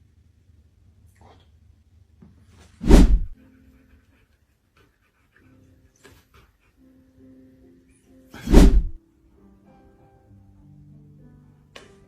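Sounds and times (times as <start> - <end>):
soft background music: 3.3 - 12.0.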